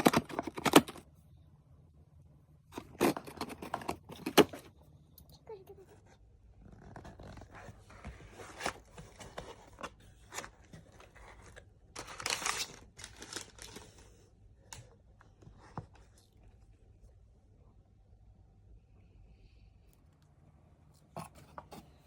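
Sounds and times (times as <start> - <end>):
packaging tearing and crinkling: 11.2 - 14.0.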